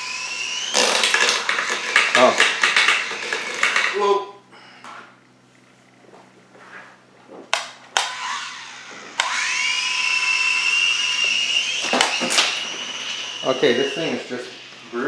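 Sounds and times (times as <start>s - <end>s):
toy helicopter rotor motors whining: 0.0s - 4.1s, 8.0s - 15.0s.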